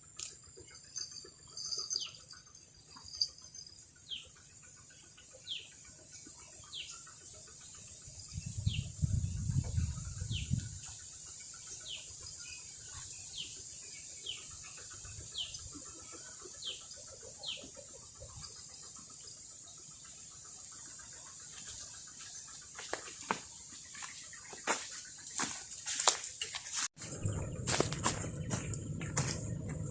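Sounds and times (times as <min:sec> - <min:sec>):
low rumble: 0:27.0 - 0:29.9.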